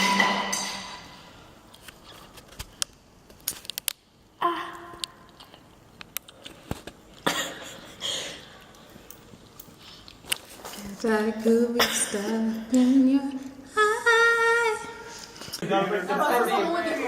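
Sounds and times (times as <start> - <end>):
person coughing: 7.2 - 8.0.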